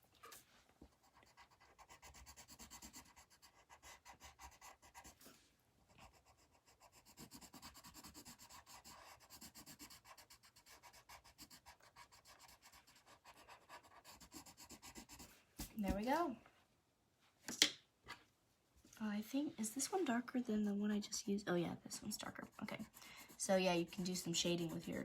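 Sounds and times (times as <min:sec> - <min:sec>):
pencil scribbling on paper: 0:01.0 - 0:05.2, 0:06.0 - 0:16.1, 0:21.1 - 0:25.0.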